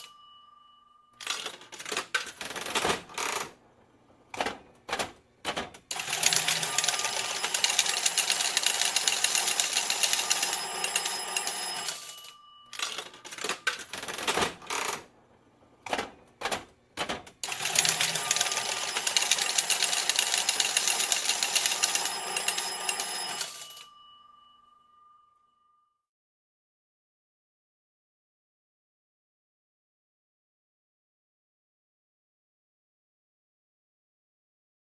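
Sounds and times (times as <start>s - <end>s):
coins clattering from slot machine: 17.5s - 23.8s.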